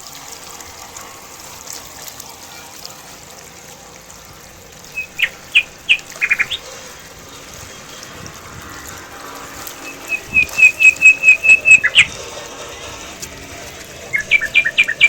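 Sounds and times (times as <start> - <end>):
bird chirping: 4.9 - 6.7, 9.8 - 12.1, 14.1 - 15.0.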